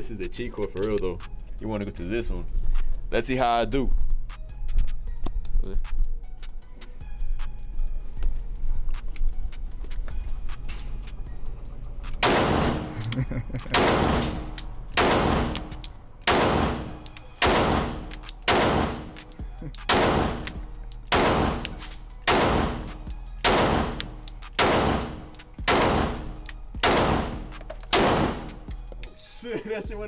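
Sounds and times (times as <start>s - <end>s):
handgun shots: 12.2s - 28.8s.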